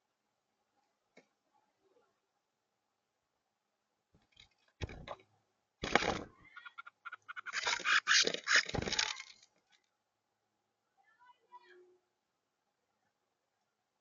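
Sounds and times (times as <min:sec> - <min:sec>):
sparrows scuffling: 0:05.9 - 0:09.8
scratchy wing flapping: 0:07.0 - 0:09.4.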